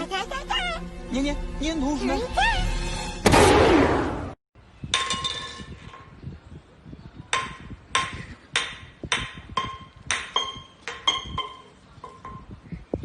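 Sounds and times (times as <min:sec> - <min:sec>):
hard object struck ringing: 0:09.6 - 0:12.5.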